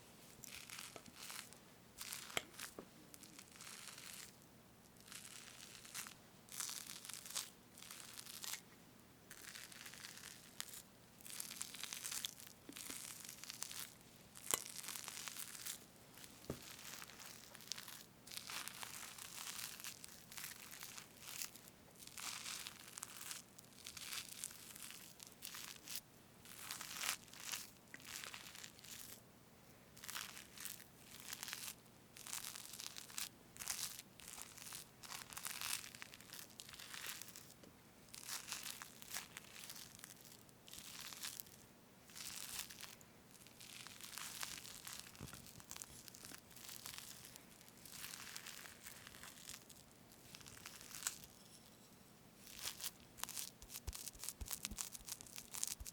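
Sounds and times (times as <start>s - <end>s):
whipped cream cake being cut: 52.5s - 55.9s.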